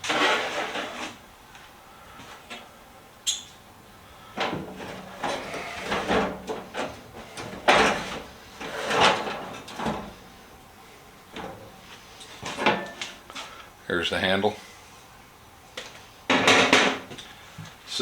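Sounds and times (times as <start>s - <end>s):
metal drawer rattling and sliding: 0.0s - 1.2s, 4.4s - 10.4s, 11.3s - 11.8s, 12.4s - 13.2s.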